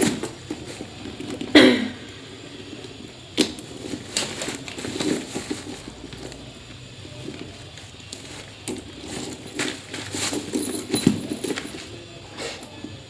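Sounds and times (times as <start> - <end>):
chain rattling: 8.7 - 11.9.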